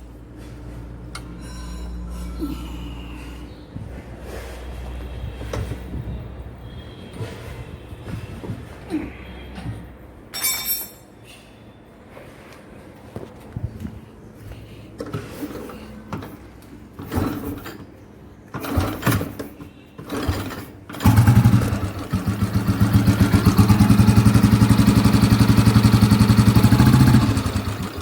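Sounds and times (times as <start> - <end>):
motorcycle engine running: 21.0 - 28.0.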